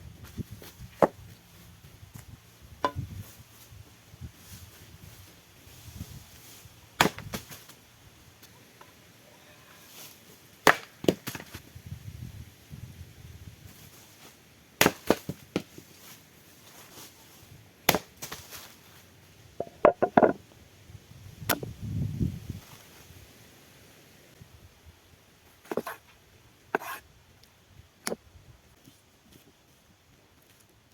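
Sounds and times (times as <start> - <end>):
tool knocking on wood: 19.9 - 20.4.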